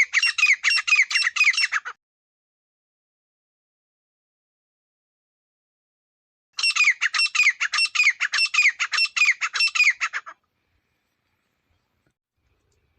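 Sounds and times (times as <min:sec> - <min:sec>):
partridge calling: 0:00.0 - 0:02.0, 0:06.6 - 0:10.4.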